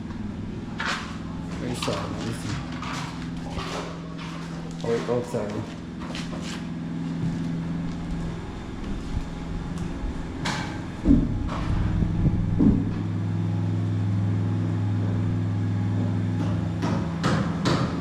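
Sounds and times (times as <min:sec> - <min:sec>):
low motor hum: 0:00.0 - 0:17.9
knocks and thuds: 0:10.6 - 0:13.0.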